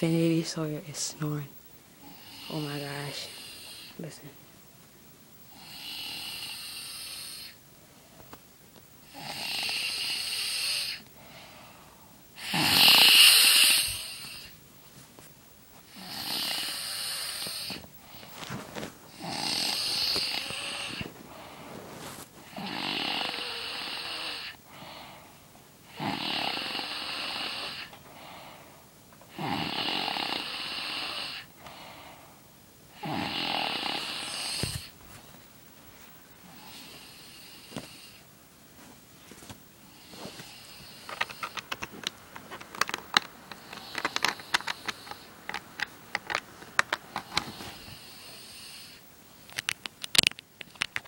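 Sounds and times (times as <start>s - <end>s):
quiet breaths: 0.0s - 4.6s, 5.4s - 49.8s
person snoring: 2.0s - 4.0s, 5.5s - 7.6s, 9.0s - 11.8s, 12.4s - 14.5s, 15.9s - 21.7s, 22.5s - 25.2s, 25.9s - 28.6s, 29.3s - 32.1s, 33.0s - 34.9s, 43.5s - 45.5s, 47.1s - 49.0s.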